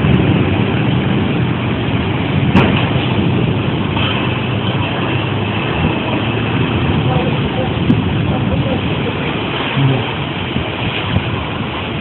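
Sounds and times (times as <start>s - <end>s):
strong wind rushing: 0.0s - 12.0s
sharp crack: 2.4s - 6.5s.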